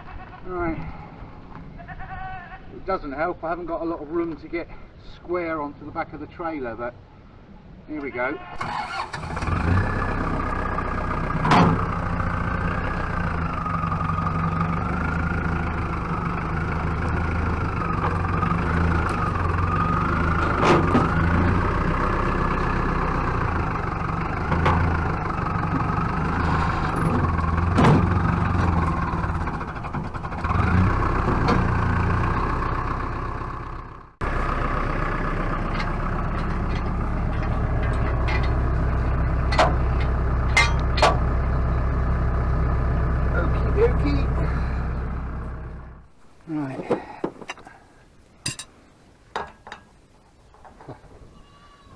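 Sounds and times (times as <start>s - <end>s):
truck engine running: 8.6s - 46.2s.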